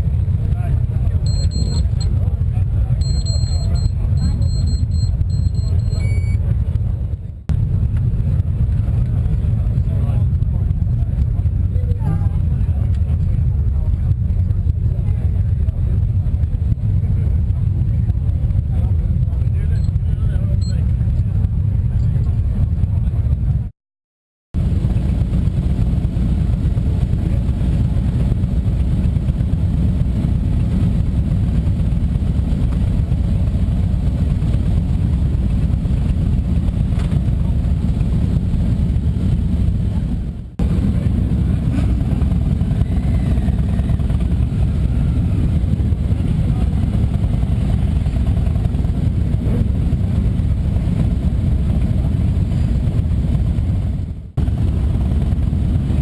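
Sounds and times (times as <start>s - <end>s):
motorcycle engine rumbling: 0.0s - 23.7s, 24.6s - 56.0s
road noise: 24.6s - 56.0s.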